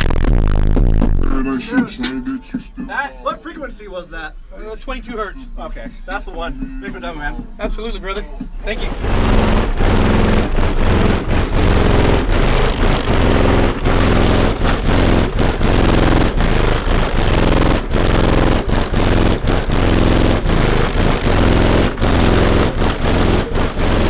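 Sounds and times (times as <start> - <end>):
loud distorted bass from car audio: 0.0 - 1.6, 8.6 - 24.0.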